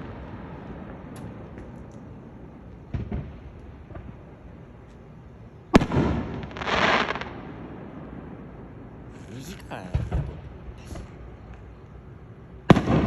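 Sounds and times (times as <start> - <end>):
fireworks crackling: 0.0 - 5.1, 5.8 - 7.4
fireworks bursting: 5.7 - 7.6, 9.0 - 11.6, 12.7 - 13.0.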